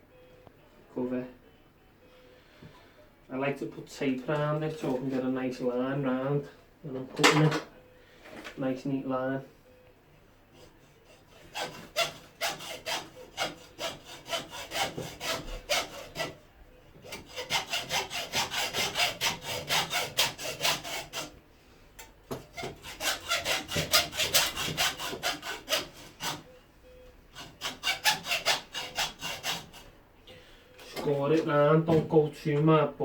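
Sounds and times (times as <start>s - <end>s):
hacksaw sawing steel wire: 10.6s - 16.4s, 17.0s - 21.4s, 22.3s - 26.5s, 27.3s - 29.9s.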